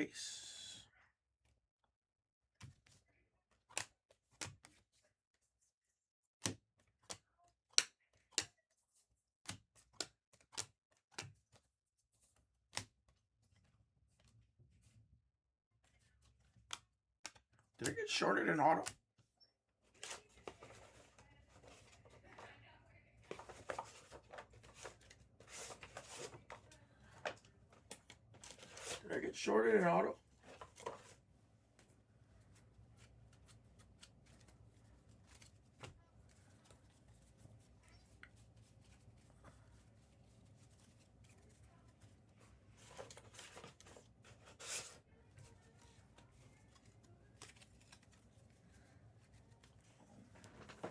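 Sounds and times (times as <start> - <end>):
trading cards being flipped: 20.0 - 22.4, 23.3 - 50.9
trading cards clicking: 31.8 - 39.9.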